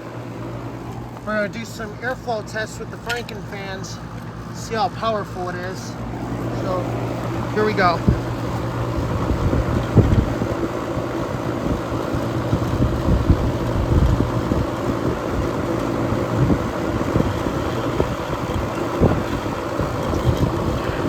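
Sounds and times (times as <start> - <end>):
air conditioner unit humming: 0.0 - 21.0
fan air rushing: 0.0 - 21.0
wind buffeting microphone: 6.1 - 21.0.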